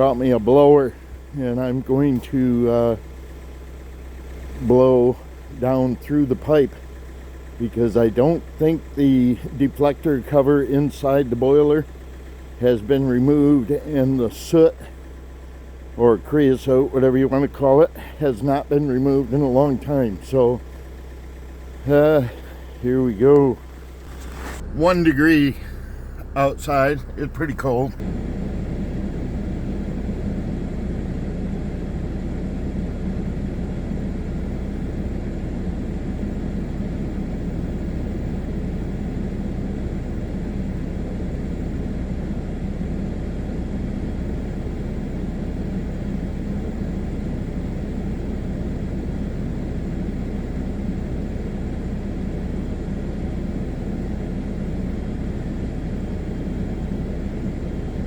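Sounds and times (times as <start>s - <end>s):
blower running: 0.0s - 58.0s.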